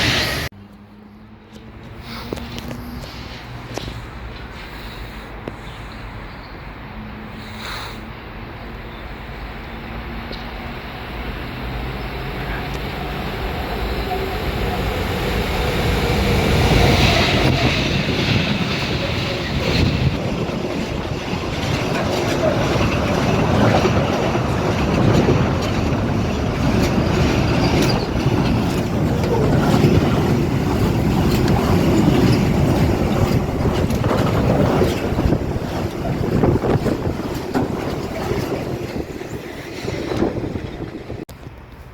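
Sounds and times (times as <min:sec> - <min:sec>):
train rumbling past: 0:00.0 - 0:41.9
train wheels clicking: 0:09.8 - 0:41.6.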